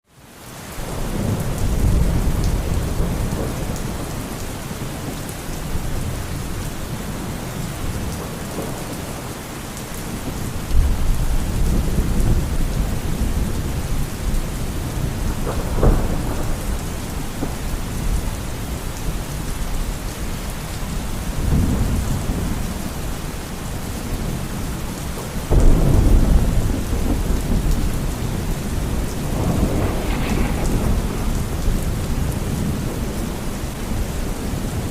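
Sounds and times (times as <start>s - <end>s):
steady rain: 0.0s - 34.9s
thunder rumbling: 10.1s - 19.5s, 25.4s - 34.9s
sharp thunder crack: 25.5s - 34.0s.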